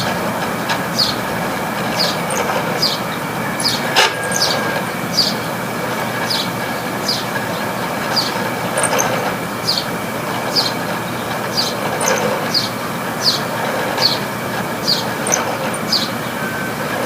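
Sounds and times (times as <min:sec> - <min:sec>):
air conditioner running: 0:00.0 - 0:17.0
fan blades sloshing water: 0:00.0 - 0:17.0.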